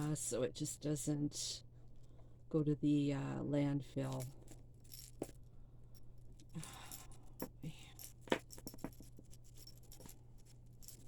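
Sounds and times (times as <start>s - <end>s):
beads and metal chains clinking: 4.0s - 11.0s.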